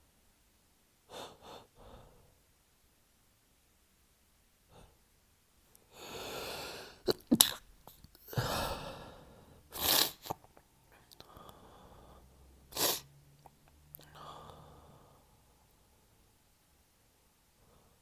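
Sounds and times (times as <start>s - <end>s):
breathy intake: 6.0s - 7.5s, 8.3s - 10.4s
man sneezing stifled: 9.7s - 10.4s.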